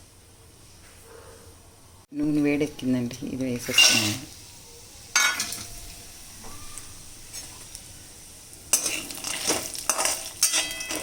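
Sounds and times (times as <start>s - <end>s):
peanuts sizzling in oil: 2.2s - 11.0s
stirring clatter against pan: 8.7s - 11.0s.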